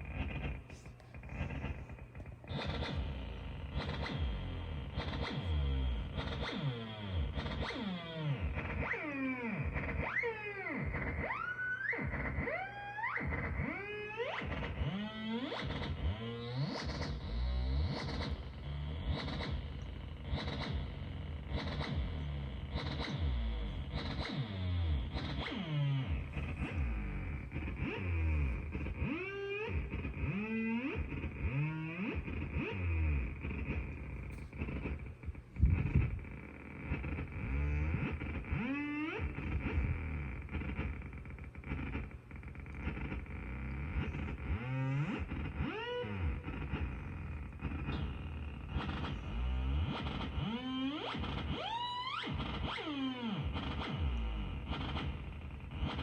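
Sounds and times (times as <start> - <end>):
steady high synth whine: 0.0 - 56.0
wobbling synth tones: 10.8 - 40.9
synthesizer bass swoops: 13.2 - 40.8
steady high drone: 17.2 - 38.2.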